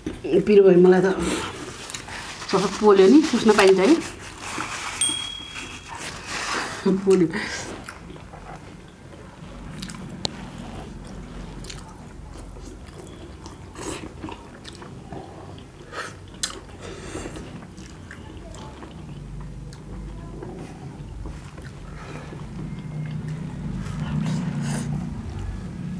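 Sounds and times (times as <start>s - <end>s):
chewing with wet smacks: 7.1s - 25.6s
steady low hum: 16.7s - 25.9s.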